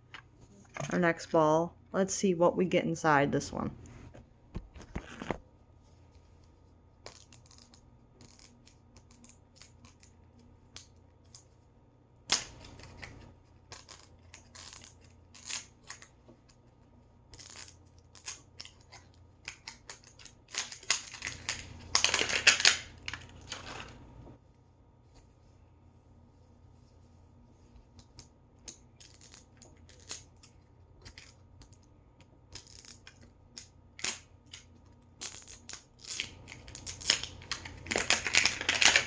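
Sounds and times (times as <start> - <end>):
plastic packaging crinkling: 19.6 - 24.2, 35.3 - 39.0.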